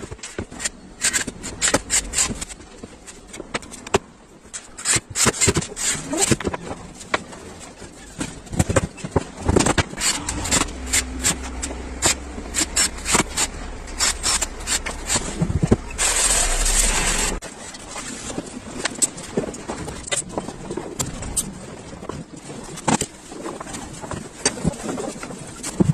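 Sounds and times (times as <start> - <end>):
loud rushing noise: 9.9 - 17.4
low motor hum: 9.9 - 17.4.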